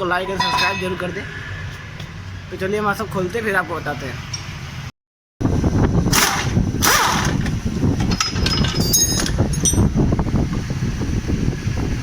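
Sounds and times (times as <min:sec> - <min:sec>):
low workshop rumble: 0:00.0 - 0:12.0
hand tools clinking on metal: 0:00.2 - 0:01.1, 0:08.1 - 0:09.9.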